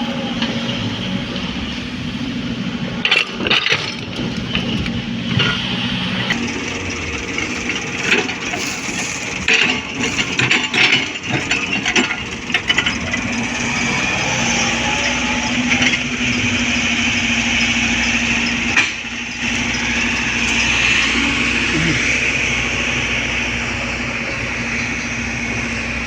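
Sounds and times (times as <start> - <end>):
excavator engine running: 0.0 - 26.0
soil and stones knocking: 6.3 - 13.1.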